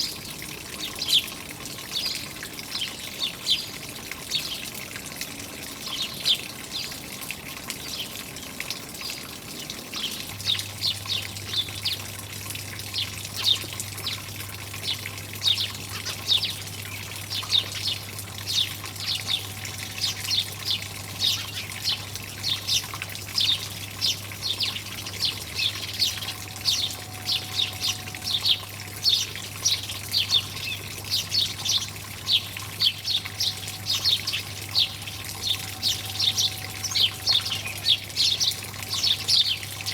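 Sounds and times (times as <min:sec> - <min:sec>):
running water: 0:00.0 - 0:39.9
small birds chirping: 0:12.9 - 0:39.9.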